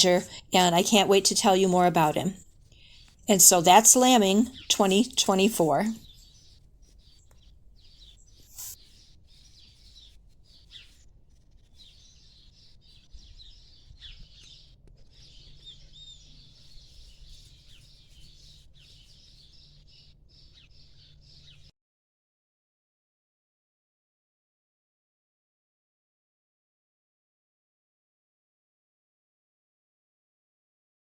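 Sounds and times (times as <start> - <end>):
small birds chirping: 0.0 - 21.7.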